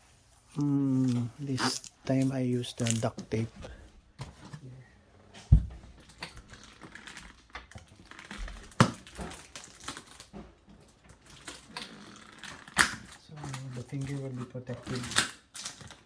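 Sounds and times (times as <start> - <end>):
dull thump: 5.5 - 5.9.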